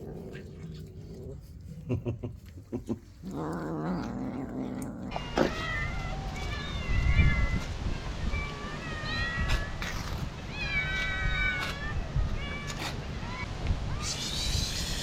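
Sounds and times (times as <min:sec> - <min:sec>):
cats meowing: 0:02.4 - 0:14.2.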